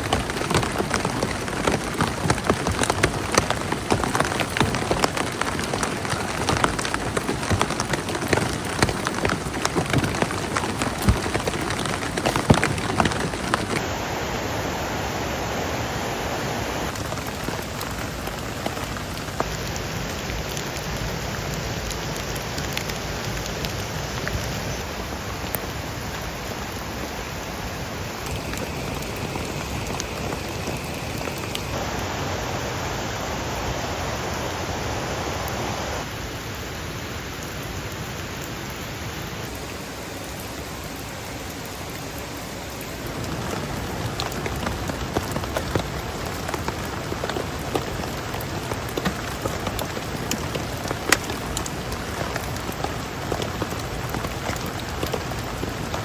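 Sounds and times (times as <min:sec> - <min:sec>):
rain drops tapping: 0:00.0 - 0:36.6, 0:37.4 - 0:56.0.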